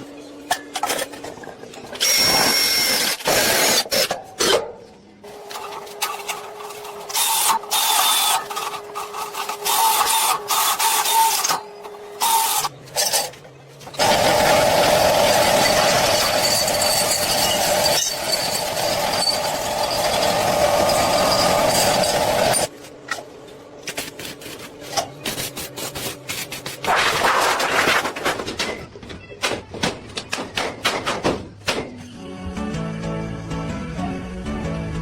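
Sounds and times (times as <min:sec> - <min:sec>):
harsh metal rasping: 0:14.0 - 0:22.7.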